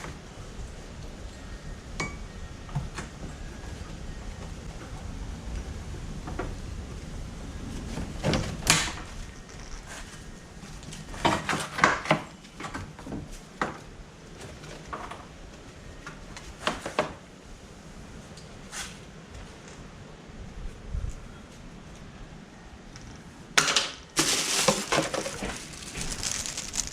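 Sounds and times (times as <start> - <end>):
hard objects knocking and clicking: 24.2 - 26.9.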